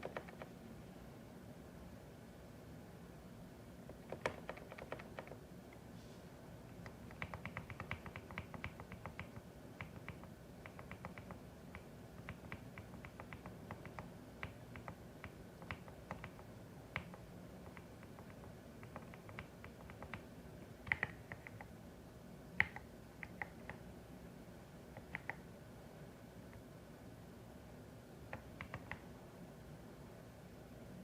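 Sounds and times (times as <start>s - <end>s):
mechanical keyboard typing: 0.0s - 0.5s, 3.9s - 5.4s, 6.7s - 21.7s, 22.6s - 23.8s, 25.0s - 25.4s, 28.3s - 29.0s
steady low hum: 0.0s - 31.0s.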